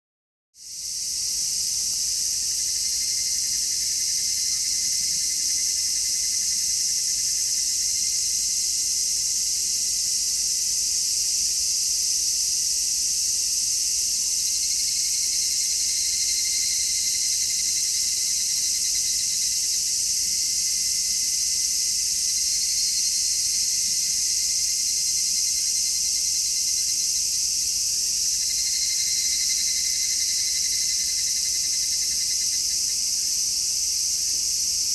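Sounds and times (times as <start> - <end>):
cicadas buzzing: 1.7 - 9.1, 13.6 - 21.8, 22.4 - 34.7.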